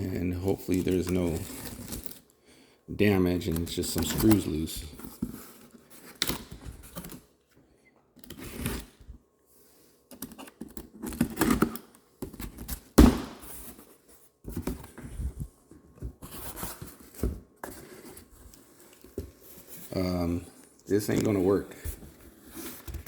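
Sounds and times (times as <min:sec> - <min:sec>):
cardboard scraping and tearing: 0:00.7 - 0:02.2.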